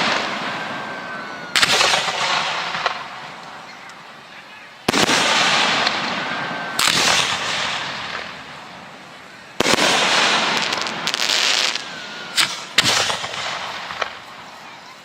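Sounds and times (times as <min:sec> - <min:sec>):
firework bangs: 0:00.0 - 0:15.0
firework hissing tail: 0:04.8 - 0:14.7.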